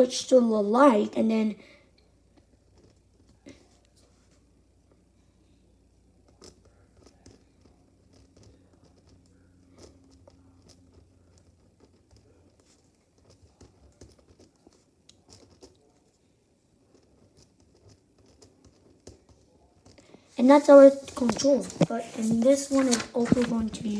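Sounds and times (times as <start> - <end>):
paper being handled: 20.4 - 23.9
pen scratching on paper: 20.4 - 23.9.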